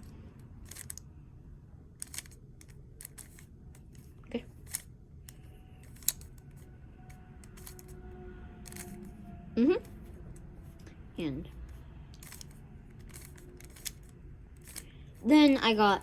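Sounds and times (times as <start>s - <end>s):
puzzle cube clicking: 0.0s - 1.1s, 2.0s - 6.7s, 7.4s - 8.0s, 8.6s - 8.9s, 11.7s - 15.2s.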